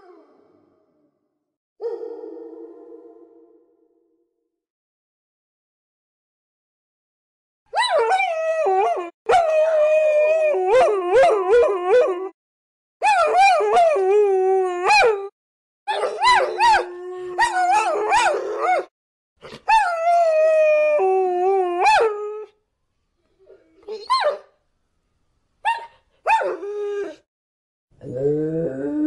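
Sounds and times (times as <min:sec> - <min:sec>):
dogs howling and yapping: 0:07.8 - 0:12.4, 0:13.0 - 0:15.3, 0:15.9 - 0:18.9, 0:19.7 - 0:22.5.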